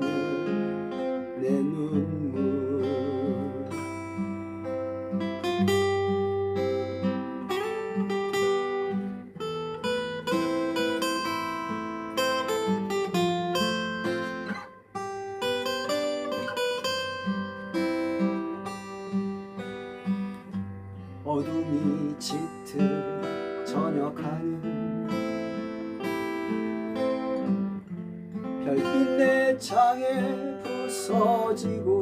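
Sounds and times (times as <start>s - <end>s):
acoustic guitar playing: 0.0s - 32.0s.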